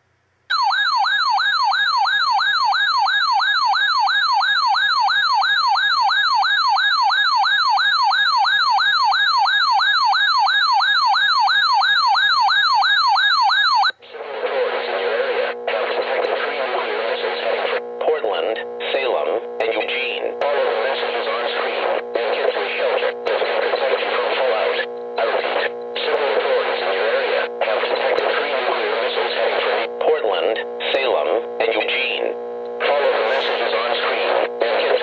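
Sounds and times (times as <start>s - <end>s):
warbling electronic alert siren: 0.5s - 14.0s
crackly humming radio broadcast: 13.8s - 35.0s.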